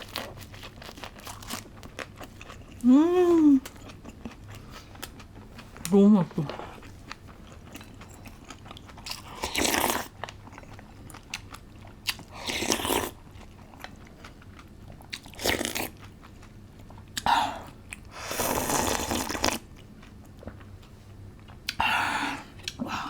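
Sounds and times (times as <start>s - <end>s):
crunchy bites and chewing: 0.0s - 2.8s, 6.8s - 16.3s.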